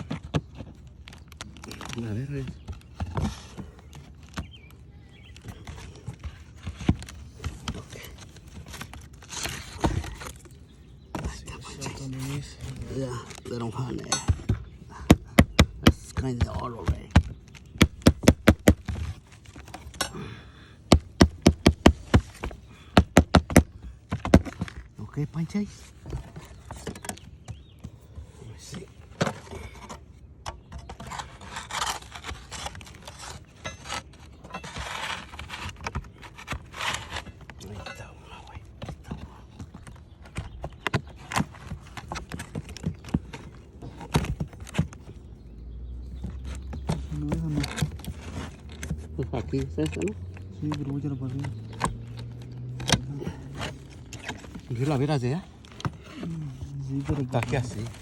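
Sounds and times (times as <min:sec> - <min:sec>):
hand tools knocking on wood: 0:13.4 - 0:20.1, 0:20.9 - 0:24.9, 0:46.1 - 0:56.2
hammer driving nails into wood: 0:14.2 - 0:19.1, 0:20.9 - 0:24.8.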